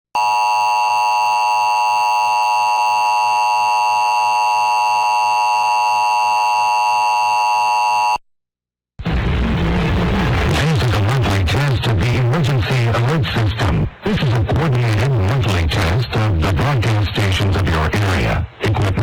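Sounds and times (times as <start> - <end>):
two-tone alarm signal: 0.2 - 8.2.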